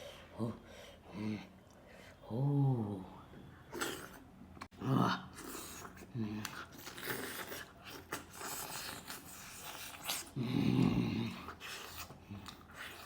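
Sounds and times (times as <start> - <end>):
wet chewing sounds: 5.3 - 13.0.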